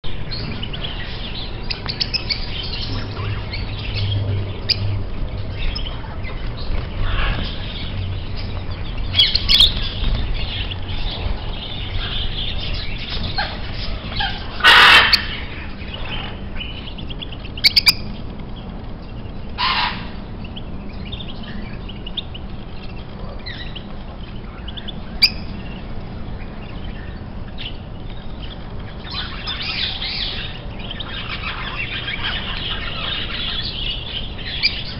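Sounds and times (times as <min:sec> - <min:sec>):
birds chirping and calling: 0:00.0 - 0:34.9
bird squawks: 0:12.0 - 0:16.4, 0:19.6 - 0:20.2.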